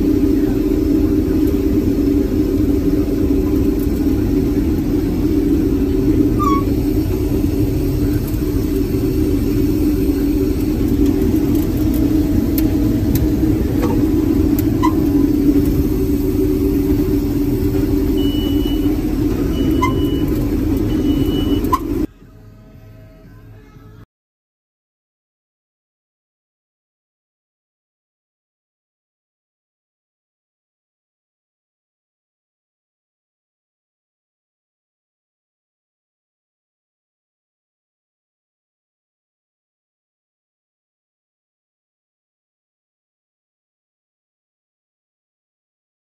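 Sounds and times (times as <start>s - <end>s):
combine harvester engine drone: 0.0s - 23.9s.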